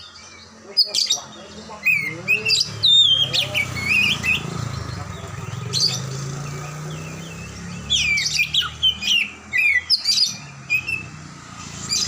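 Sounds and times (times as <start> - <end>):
bird chirps and whistles: 1.9 - 4.6, 7.0 - 11.2.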